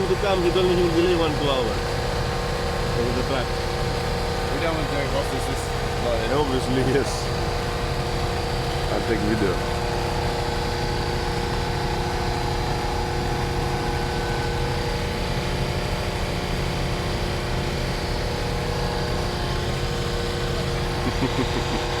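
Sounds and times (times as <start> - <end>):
constant machine tones: 0.0 - 22.0
machinery engine hum: 0.0 - 22.0.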